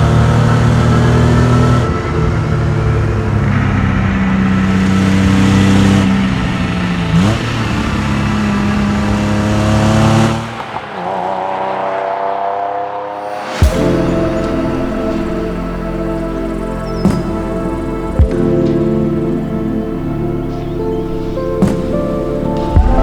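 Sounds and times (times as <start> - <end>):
car engine under throttle: 0.0 - 18.2.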